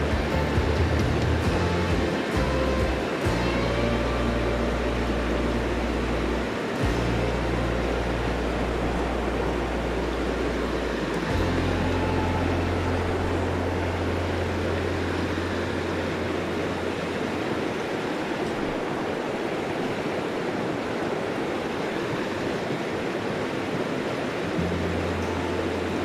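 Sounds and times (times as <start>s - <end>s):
low rumble: 0.0s - 17.3s
stream water rushing over rocks: 0.0s - 26.0s.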